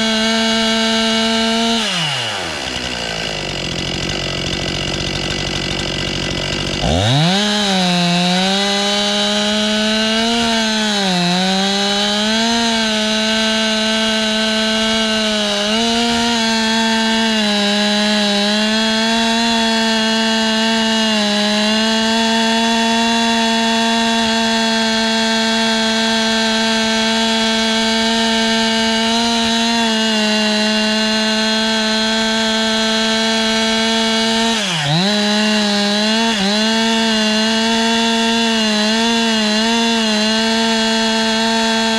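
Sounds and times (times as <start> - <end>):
chainsaw cutting a log: 0.0 - 41.9.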